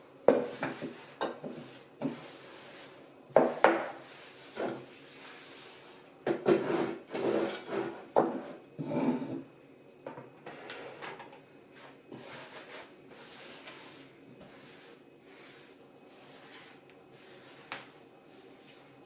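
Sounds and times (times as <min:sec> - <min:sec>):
rubbing and sliding noises: 0:11.8 - 0:19.0.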